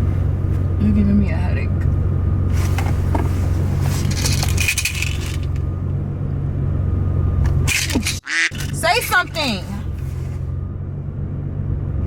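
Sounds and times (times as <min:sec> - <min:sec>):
car engine drone inside cabin: 0:00.0 - 0:12.0
rustling clatter: 0:02.5 - 0:05.8.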